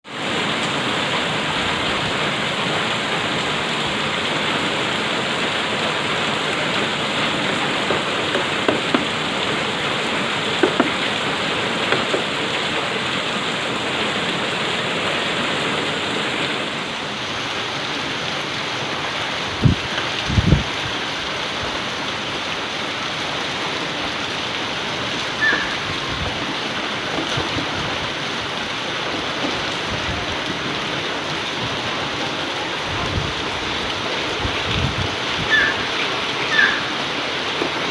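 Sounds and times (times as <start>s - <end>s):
heavy rain falling: 0.0s - 37.9s
sharp taps: 10.6s - 11.1s.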